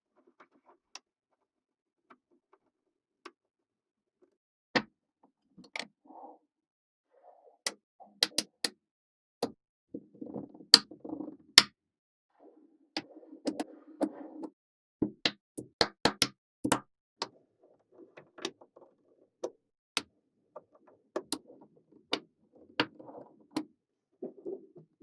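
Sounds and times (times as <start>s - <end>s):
balls rolling and rustling: 20.5s - 25.0s.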